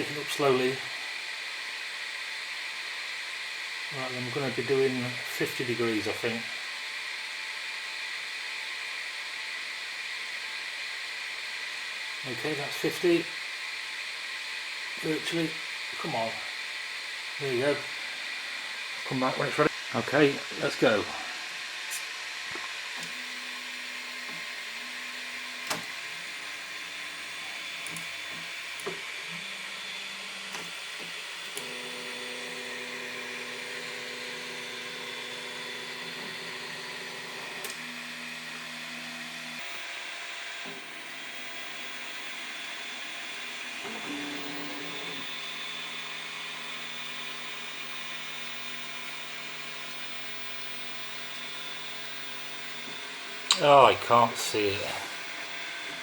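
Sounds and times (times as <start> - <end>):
printer fan whir: 0.0 - 56.0
stepper motors humming: 17.3 - 56.0.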